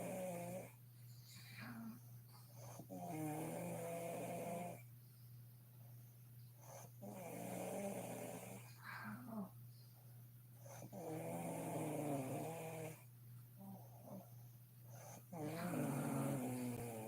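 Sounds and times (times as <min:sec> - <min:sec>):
woman snoring: 0:00.0 - 0:00.8, 0:02.7 - 0:04.8, 0:07.0 - 0:09.5, 0:10.7 - 0:14.2, 0:15.0 - 0:17.0
soft breath sound: 0:01.0 - 0:03.1, 0:04.7 - 0:11.0.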